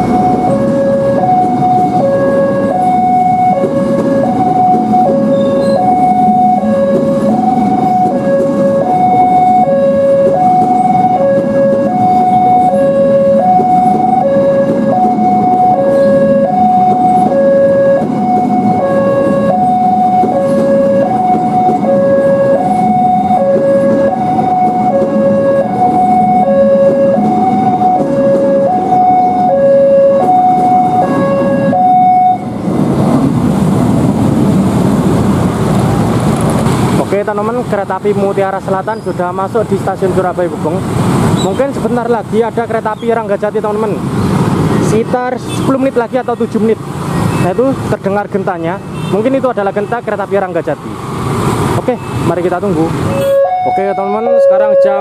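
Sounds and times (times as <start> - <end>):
level crossing two-tone alarm: 0.0 - 32.6, 53.1 - 55.0.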